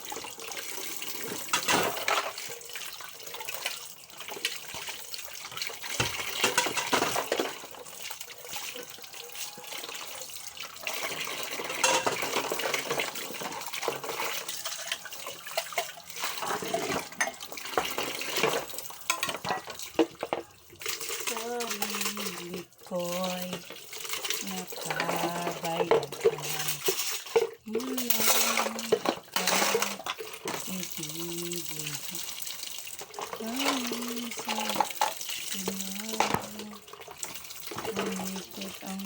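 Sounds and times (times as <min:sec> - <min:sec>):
tap water running into sink: 0:00.0 - 0:39.0
dishes knocking and clattering: 0:01.2 - 0:02.5, 0:05.5 - 0:07.8, 0:11.1 - 0:20.5, 0:24.7 - 0:30.7, 0:33.0 - 0:36.6.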